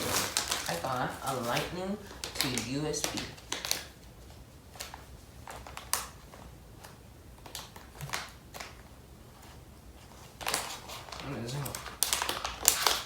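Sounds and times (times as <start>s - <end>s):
package clicks and rustles: 0.0s - 9.6s, 10.2s - 13.0s.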